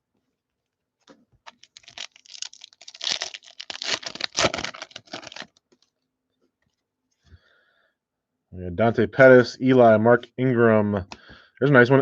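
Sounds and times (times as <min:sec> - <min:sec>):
cards rustling: 0:01.0 - 0:05.9
card pack wrapper crinkling: 0:01.4 - 0:05.9.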